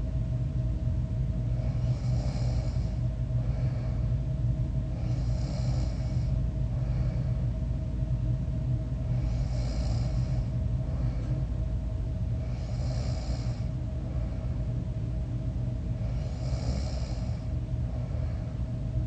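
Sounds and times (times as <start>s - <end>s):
steady low hum: 0.0s - 19.0s
person snoring: 1.6s - 3.8s, 5.0s - 7.2s, 9.1s - 11.1s, 12.4s - 13.7s, 16.0s - 17.5s.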